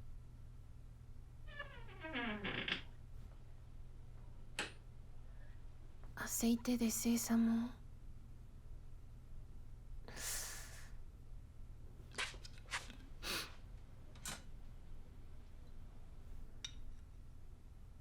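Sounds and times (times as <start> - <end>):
soft breath or sigh: 10.1 - 11.0.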